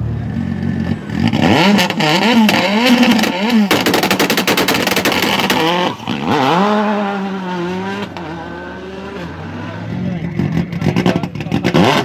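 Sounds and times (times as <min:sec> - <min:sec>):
car engine revving: 0:00.0 - 0:12.0
car exhaust crackling and popping: 0:00.1 - 0:07.1, 0:10.2 - 0:12.0.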